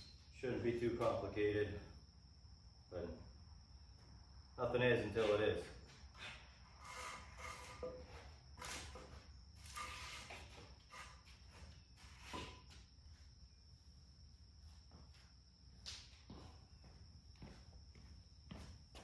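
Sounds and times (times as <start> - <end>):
light knocks and scrapes: 5.2 - 12.9
faint footsteps: 14.6 - 19.0.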